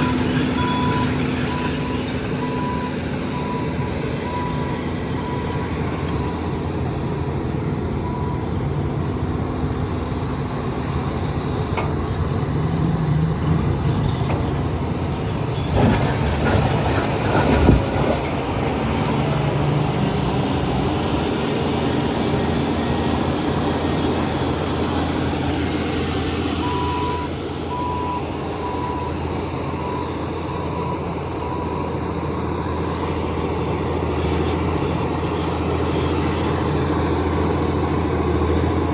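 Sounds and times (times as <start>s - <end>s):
reversing alarm beeping: 0.0s - 6.6s, 26.6s - 32.0s
heavy diesel engines running: 0.0s - 38.9s
metallic clanking and knocking: 13.4s - 19.4s.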